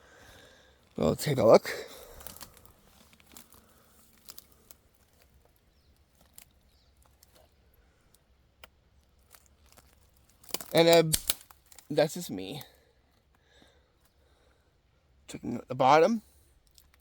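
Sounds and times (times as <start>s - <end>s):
faint clicks and crackles: 1.8s - 14.2s, 16.6s - 17.0s.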